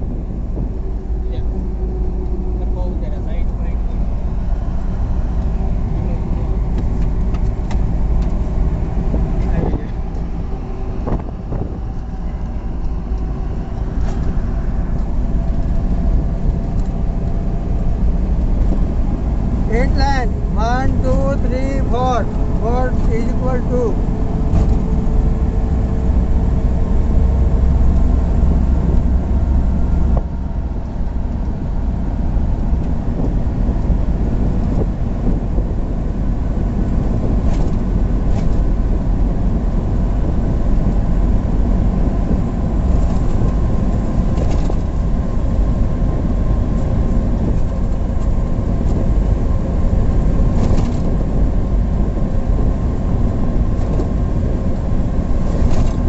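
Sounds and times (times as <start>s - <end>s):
faint steady whine: 0.0s - 37.2s
vehicle road and engine rumble: 0.0s - 56.0s.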